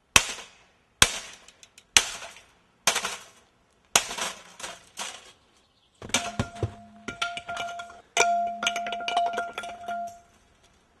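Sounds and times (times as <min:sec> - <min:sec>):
metal bat smashing plastic and metal: 0:02.0 - 0:03.4, 0:04.0 - 0:05.4, 0:06.0 - 0:10.2
metallic ringing: 0:06.1 - 0:10.3.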